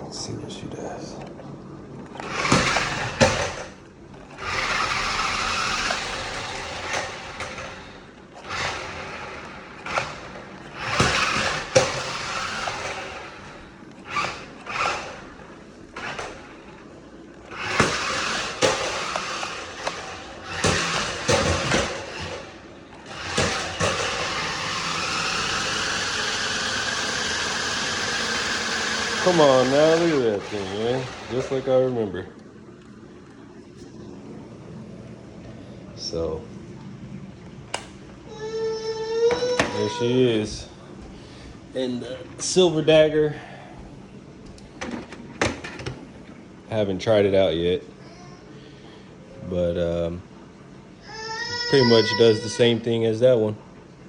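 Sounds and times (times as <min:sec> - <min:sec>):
toy car electric motor whirring: 0:02.2 - 0:03.7, 0:04.4 - 0:13.3, 0:14.1 - 0:15.2, 0:17.5 - 0:31.6.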